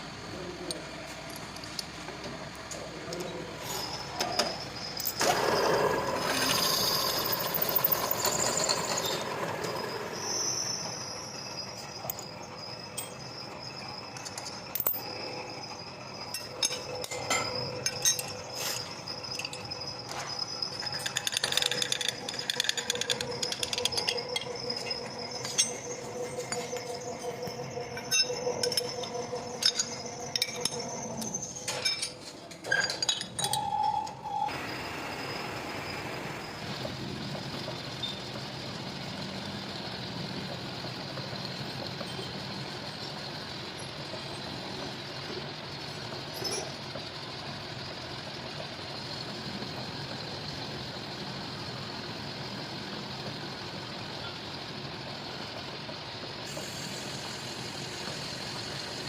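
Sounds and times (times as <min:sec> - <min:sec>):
steady machine tone: 0:02.4 - 0:40.8.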